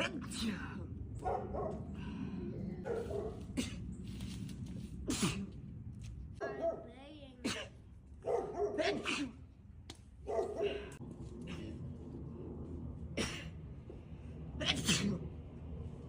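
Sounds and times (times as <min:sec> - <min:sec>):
person sneezing: 0:08.8 - 0:09.4.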